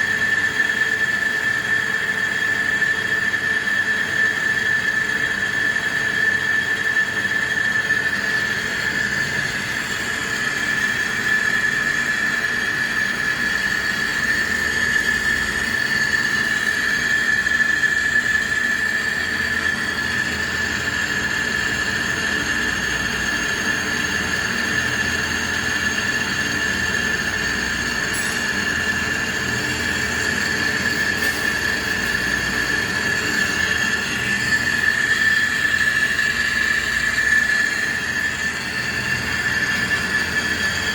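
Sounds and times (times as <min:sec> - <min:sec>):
lathe cutting whine: 0:00.0 - 0:40.9
machine hum: 0:19.8 - 0:40.9.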